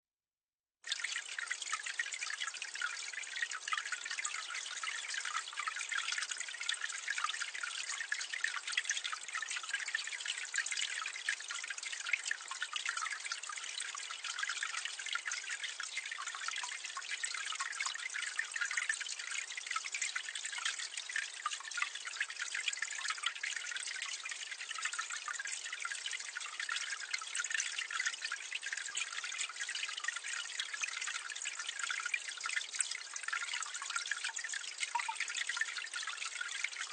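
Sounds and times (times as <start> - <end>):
water pouring from drain: 0.9 - 36.9.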